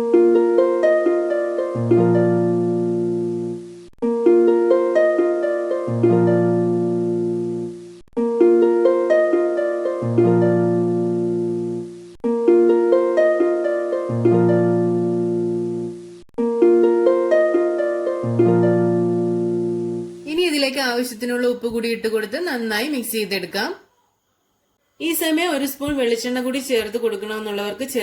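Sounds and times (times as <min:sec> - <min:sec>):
plucked string melody: 0:00.0 - 0:20.2.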